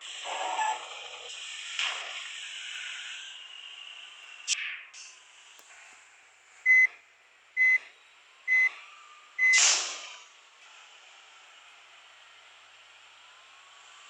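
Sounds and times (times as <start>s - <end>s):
short high electronic beeps: 9.4s - 9.6s.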